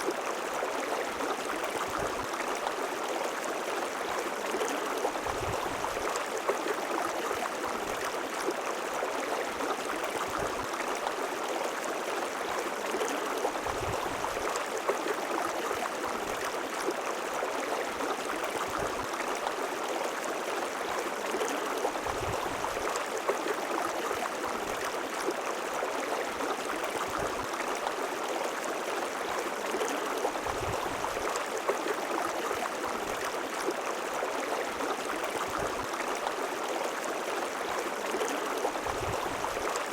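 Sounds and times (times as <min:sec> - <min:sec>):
river water flowing over rocks: 0:00.0 - 0:39.9.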